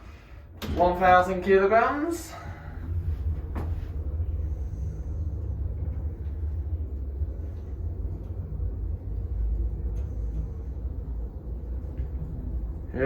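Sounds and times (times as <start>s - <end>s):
lift low rumble: 0.0s - 13.0s.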